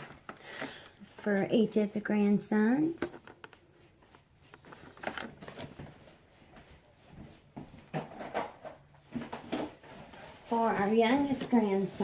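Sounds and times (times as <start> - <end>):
packaged toys rustling and clicking: 4.5 - 6.0.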